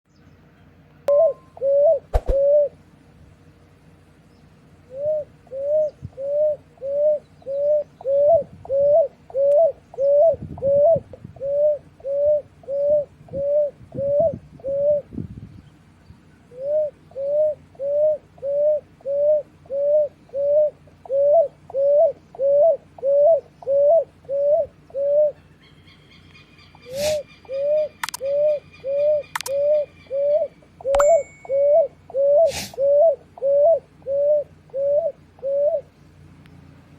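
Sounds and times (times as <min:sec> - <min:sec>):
dove cooing: 0:01.1 - 0:02.8, 0:04.9 - 0:15.2, 0:16.5 - 0:25.6, 0:26.7 - 0:36.0
higher drawn-out bird call: 0:16.5 - 0:35.9
sharp clicks: 0:28.0 - 0:28.3, 0:29.3 - 0:29.6.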